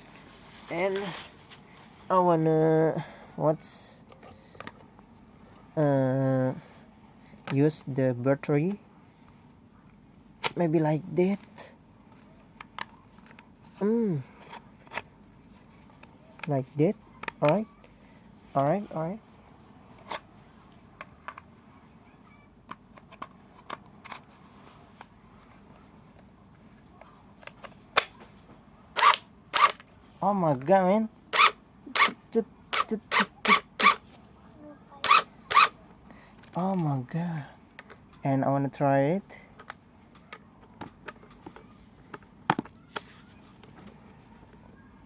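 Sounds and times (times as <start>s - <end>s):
impact wrench handling clicks: 29.0s - 29.8s.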